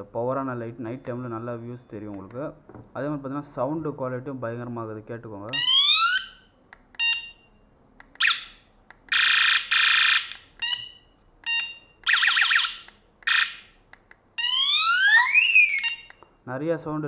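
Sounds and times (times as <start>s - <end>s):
rising siren whoops: 14.4s - 16.0s.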